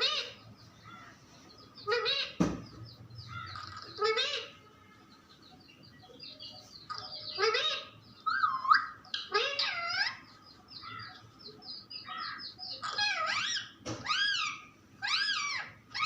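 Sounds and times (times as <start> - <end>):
parrot chirps and squawks: 0.0 - 1.1, 1.8 - 2.4, 3.3 - 4.7, 6.8 - 11.2, 12.0 - 16.0.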